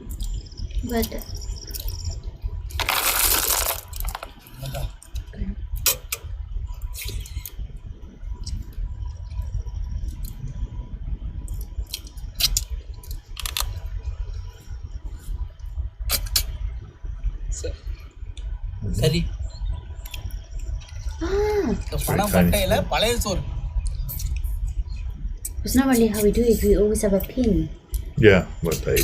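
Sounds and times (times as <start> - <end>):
steady low rumble: 0.0 - 29.0
small hard objects clinking: 2.7 - 4.4.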